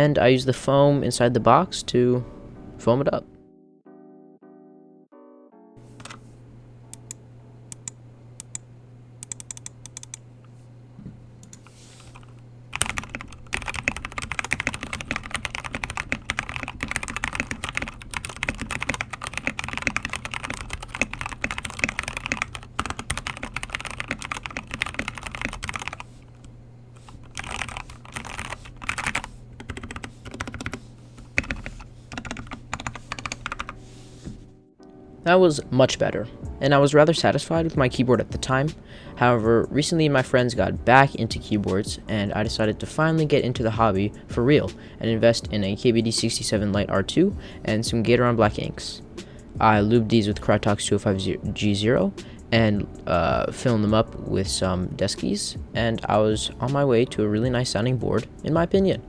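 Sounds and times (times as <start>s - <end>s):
steady low hum: 5.8s - 35.2s
mechanical keyboard typing: 7.0s - 8.6s, 9.2s - 10.2s, 11.4s - 26.4s, 27.0s - 33.8s.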